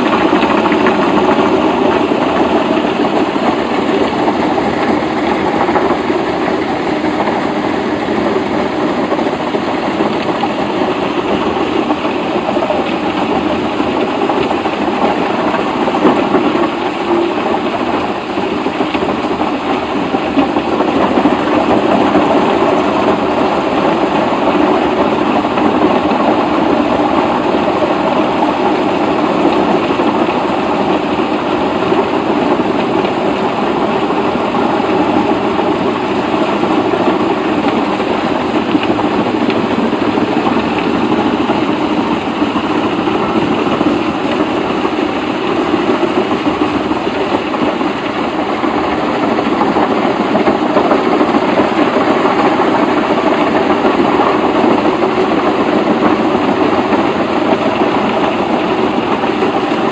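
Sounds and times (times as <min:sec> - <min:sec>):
engine running loudly: 0:00.0 - 0:59.9.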